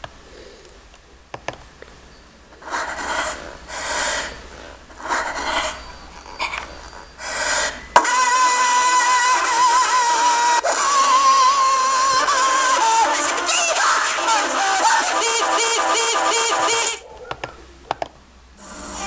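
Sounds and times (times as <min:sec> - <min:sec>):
person breathing hard: 0:07.2 - 0:07.9.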